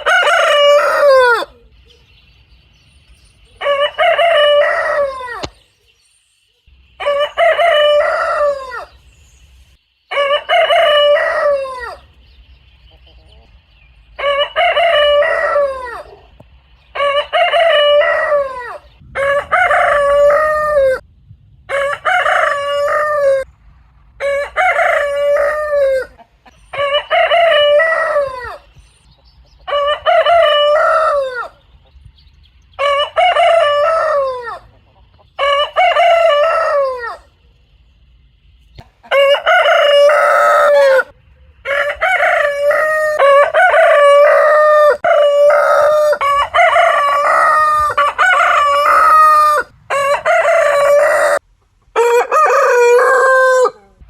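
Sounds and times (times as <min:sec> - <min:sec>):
rooster crowing: 0:00.0 - 0:01.7, 0:03.6 - 0:05.6, 0:07.0 - 0:09.0, 0:10.1 - 0:12.1, 0:14.2 - 0:16.3, 0:17.0 - 0:21.0, 0:21.7 - 0:23.5, 0:24.2 - 0:28.7, 0:29.7 - 0:31.6, 0:32.8 - 0:34.7, 0:35.4 - 0:37.4, 0:39.0 - 0:54.0.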